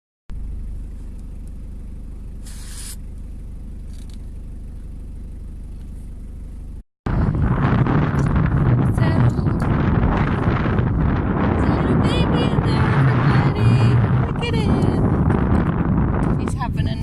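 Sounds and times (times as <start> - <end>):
steady low rumble: 0.3 - 17.0
brief hiss: 2.4 - 3.0
wind buffeting microphone: 7.1 - 17.0.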